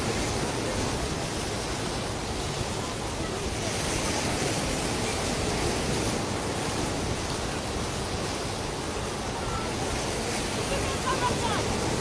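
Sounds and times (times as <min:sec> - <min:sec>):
sea surf washing onto beach: 0:00.0 - 0:12.0.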